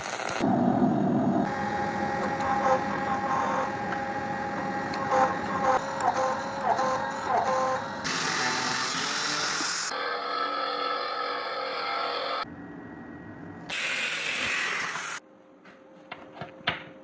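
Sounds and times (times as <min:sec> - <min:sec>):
power tool hissing and whining: 0:07.8 - 0:12.4.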